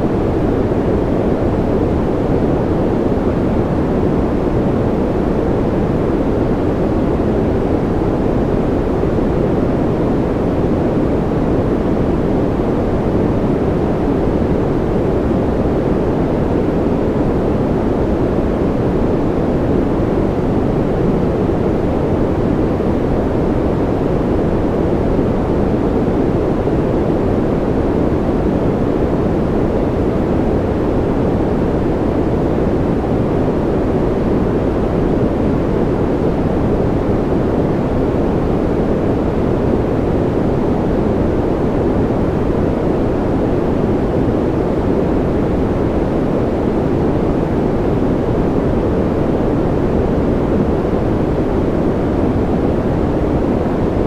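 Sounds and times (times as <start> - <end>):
deep steady noise rush: 0.0 - 54.0.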